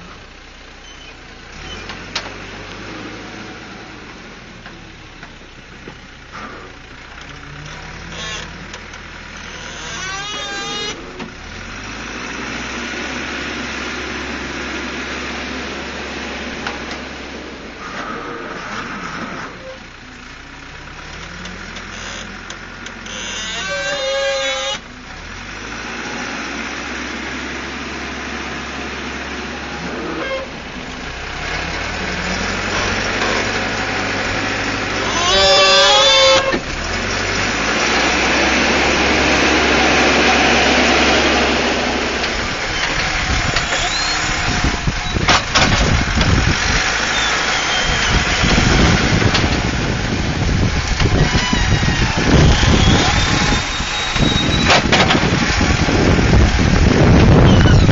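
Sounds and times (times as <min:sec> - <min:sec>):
diesel engine under load: 0:00.0 - 0:57.9
high wavering squeals: 0:23.1 - 0:24.8, 0:35.0 - 0:36.6, 0:42.7 - 0:45.3, 0:47.0 - 0:49.0, 0:51.1 - 0:54.8, 0:57.4 - 0:57.9
low rumbling and knocks: 0:42.2 - 0:57.9.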